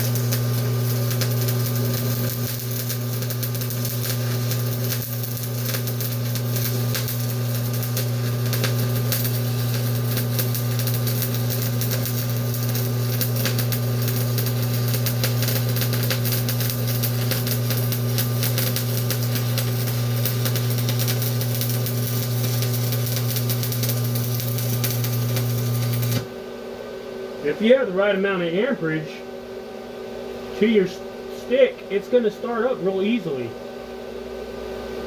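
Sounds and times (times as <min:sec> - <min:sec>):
welding arc crackling: 0:00.0 - 0:26.3
electrical hum: 0:00.0 - 0:35.0.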